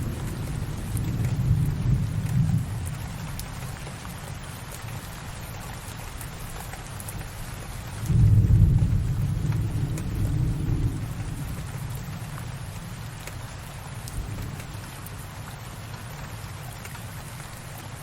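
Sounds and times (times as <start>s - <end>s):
thunder rumble: 0.0s - 3.5s, 8.0s - 15.5s
steady rain: 0.0s - 18.0s.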